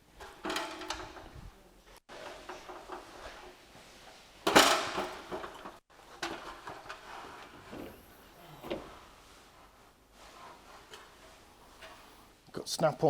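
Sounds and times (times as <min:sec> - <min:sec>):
metal cabinet clunk: 0:00.1 - 0:01.5, 0:04.4 - 0:08.1.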